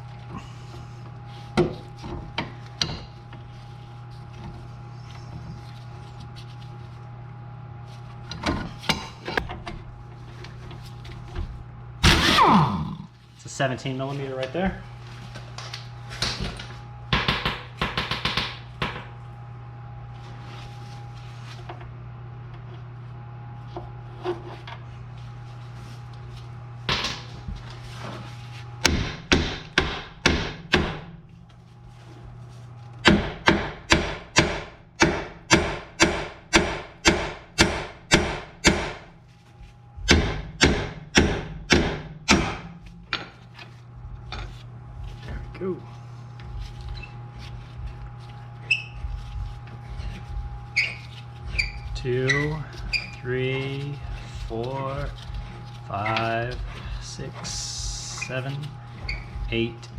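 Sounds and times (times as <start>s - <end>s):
steady low hum: 0.0s - 59.9s
hammer striking steel: 33.1s - 39.0s.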